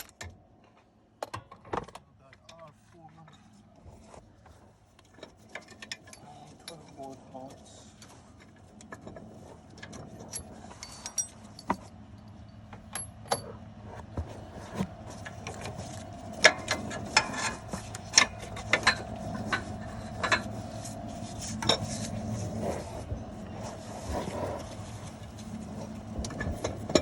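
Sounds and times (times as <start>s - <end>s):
hand tools clinking against metal: 10.3s - 11.9s.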